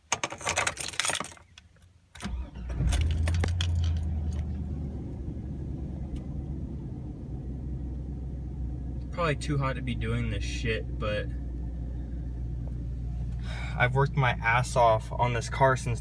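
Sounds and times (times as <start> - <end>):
keys jangling: 0.1 - 1.5, 2.8 - 4.5
car engine starting and idling: 2.2 - 16.0.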